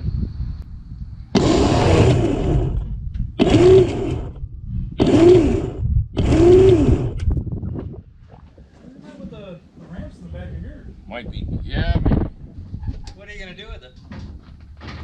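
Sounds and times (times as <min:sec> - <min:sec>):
electric winch motor whine: 0:01.3 - 0:07.4.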